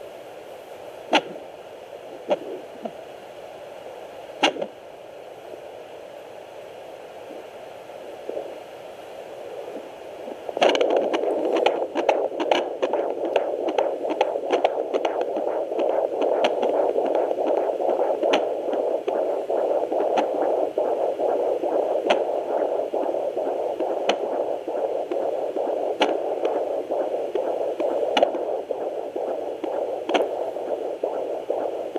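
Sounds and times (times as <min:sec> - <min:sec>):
crackles: 0:09.6 - 0:31.9
fast pulsing heartbeat whoosh: 0:10.5 - 0:31.9.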